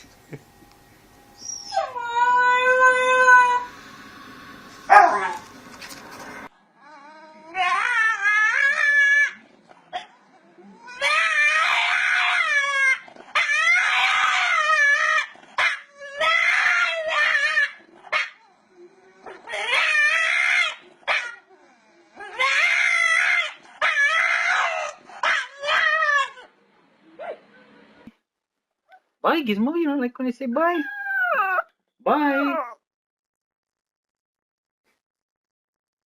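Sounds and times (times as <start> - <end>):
dog howling and whining: 1.4 - 3.8, 4.9 - 5.5, 6.8 - 9.4, 10.6 - 26.5, 30.8 - 32.8.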